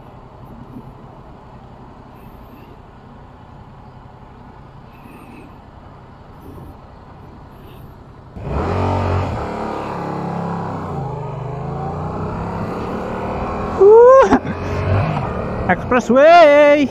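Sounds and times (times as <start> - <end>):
motorcycle engine accelerating: 8.3 - 16.6.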